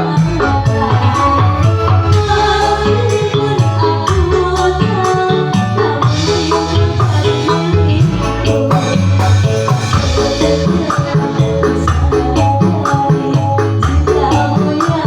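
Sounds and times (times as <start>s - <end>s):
instrumental music with bass line: 0.0s - 15.0s
shaker percussion: 0.0s - 15.0s.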